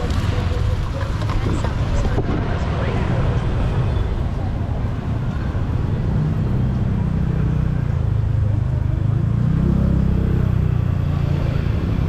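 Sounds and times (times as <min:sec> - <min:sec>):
street noise: 0:00.0 - 0:12.0
vehicle engine humming: 0:00.0 - 0:12.0.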